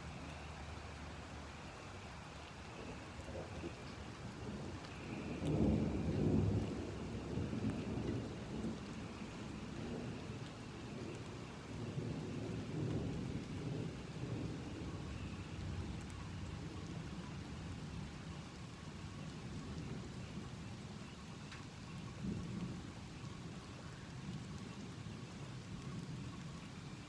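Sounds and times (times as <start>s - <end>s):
gentle rain: 0.0s - 27.0s
thunder rumbling: 1.7s - 20.8s.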